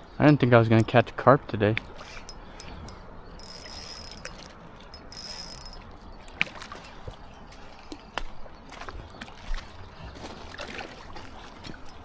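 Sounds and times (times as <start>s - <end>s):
fishing reel whirring: 2.2s - 5.9s.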